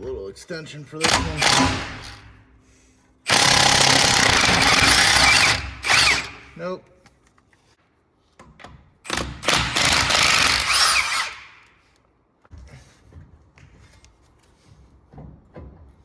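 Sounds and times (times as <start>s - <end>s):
power tool driving a socket: 1.0s - 2.3s, 3.3s - 6.5s, 9.1s - 11.8s.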